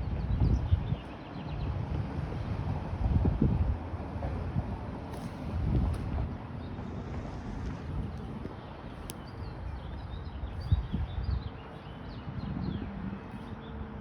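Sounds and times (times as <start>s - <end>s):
wind on microphone: 0.0s - 14.0s
small birds chirping: 8.0s - 13.8s.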